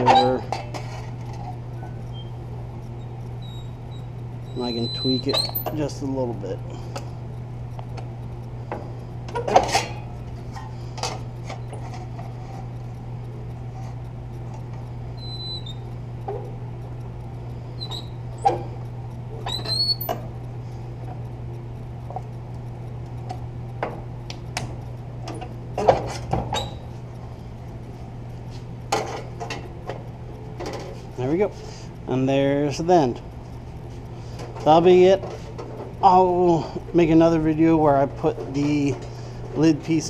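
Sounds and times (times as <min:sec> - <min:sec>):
high metal squeaks: 0:00.0 - 0:06.0, 0:15.2 - 0:16.0, 0:17.8 - 0:18.7, 0:19.4 - 0:20.2, 0:26.1 - 0:26.9
steady low hum: 0:00.0 - 0:40.0.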